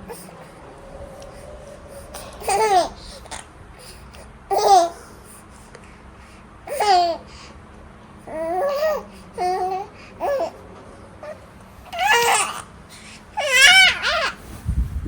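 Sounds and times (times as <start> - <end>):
baby babbling: 1.9 - 5.2, 6.7 - 7.2, 8.3 - 10.6, 11.2 - 12.7.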